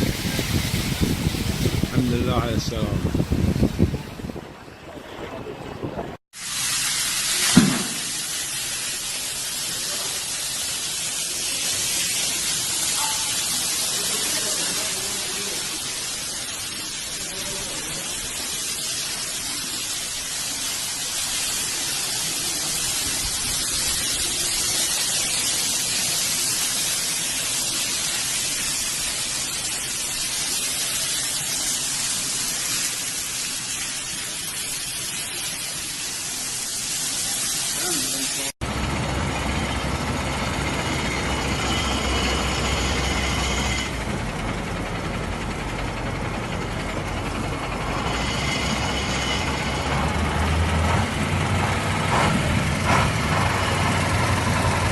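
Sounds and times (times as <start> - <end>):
rushing water hiss: 0.0 - 4.4, 6.3 - 54.9
brief knock: 7.5 - 8.1.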